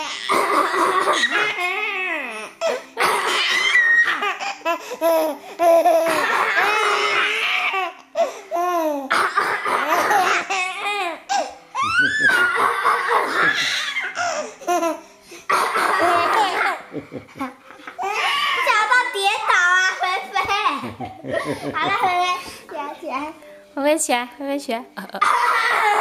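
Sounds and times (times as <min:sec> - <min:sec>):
child coughing: 0:00.2 - 0:01.5, 0:03.0 - 0:03.8, 0:09.1 - 0:10.5, 0:12.3 - 0:13.6, 0:15.5 - 0:16.8
baby laughing: 0:08.8 - 0:15.0, 0:15.9 - 0:18.7.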